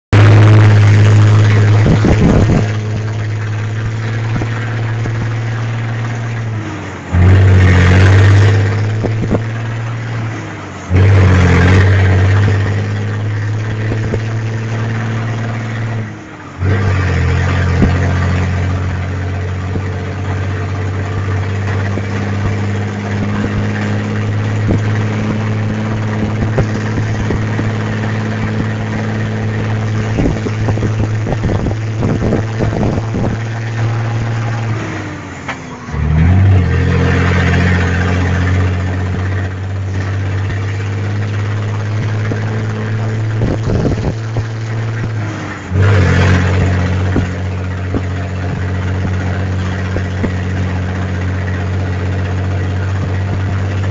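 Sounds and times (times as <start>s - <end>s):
diesel truck engine revving: 0.0s - 53.9s.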